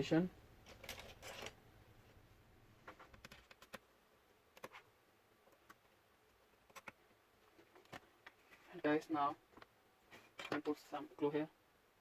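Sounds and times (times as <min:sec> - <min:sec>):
plastic parts clicking: 0:00.6 - 0:01.6, 0:06.6 - 0:08.4.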